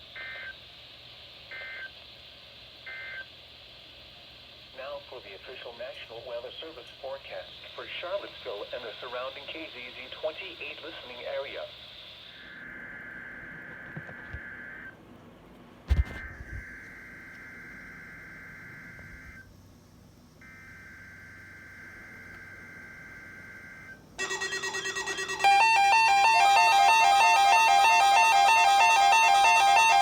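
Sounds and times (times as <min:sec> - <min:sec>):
faint steady electronic tone: 0:00.0 - 0:15.4, 0:16.0 - 0:30.0
loud beeping melody: 0:24.2 - 0:30.0.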